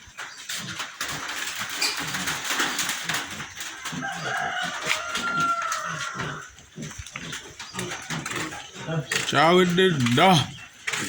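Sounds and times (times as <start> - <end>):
chickens clucking: 0.0 - 11.0
rooster crowing: 4.0 - 6.5.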